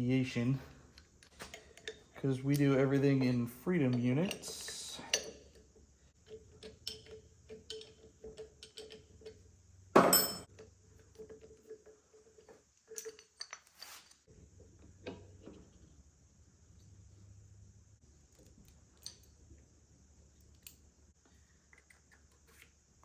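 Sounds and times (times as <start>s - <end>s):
hand tools clinking on metal: 1.3s - 9.4s, 10.0s - 14.0s.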